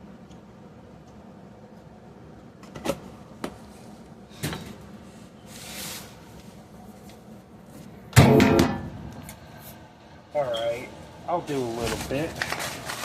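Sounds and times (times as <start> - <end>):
scraping rustle: 11.5 - 13.0.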